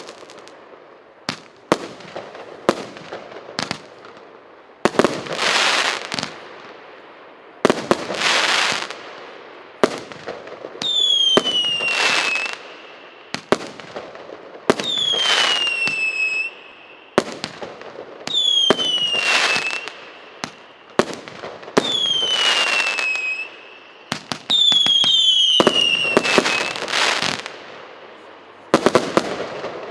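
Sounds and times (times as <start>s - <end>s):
firework bursts: 0.0s - 6.8s, 7.6s - 29.9s
falling firework whistle: 10.8s - 13.6s, 14.7s - 17.4s, 18.3s - 21.1s, 21.8s - 27.5s.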